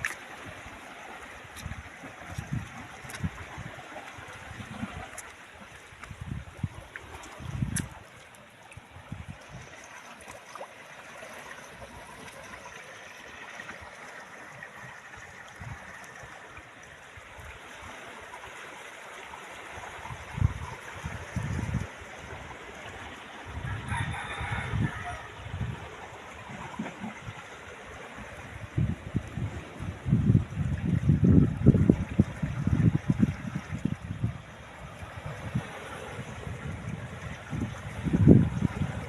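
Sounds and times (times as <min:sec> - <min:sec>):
wind buffeting microphone: 0:01.4 - 0:08.1, 0:19.8 - 0:39.0
rooster crowing: 0:23.6 - 0:25.4.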